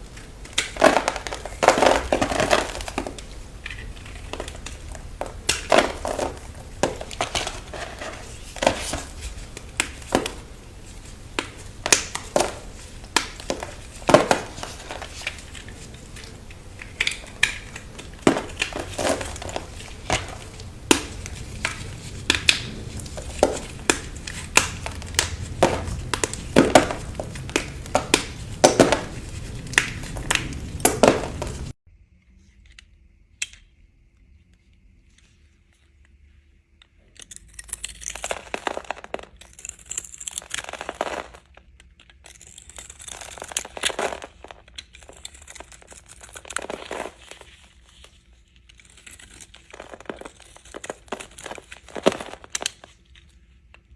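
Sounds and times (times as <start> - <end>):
knife cutting soap: 11.3 - 30.4.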